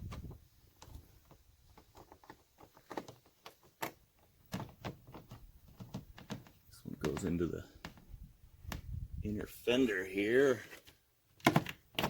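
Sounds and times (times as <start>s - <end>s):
plastic parts and tools clicking: 0.8s - 8.1s, 10.7s - 12.0s.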